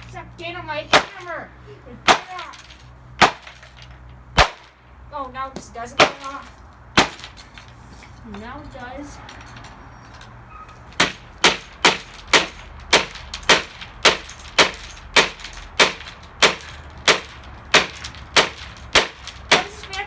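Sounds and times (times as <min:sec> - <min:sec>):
hammer striking plastic casing: 0:00.9 - 0:01.3, 0:02.1 - 0:03.8, 0:06.0 - 0:07.4, 0:11.0 - 0:20.0.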